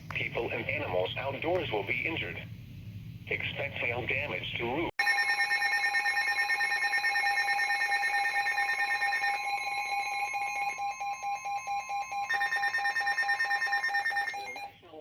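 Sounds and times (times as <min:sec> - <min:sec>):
steady warning alarm tone: 0:05.0 - 0:14.8.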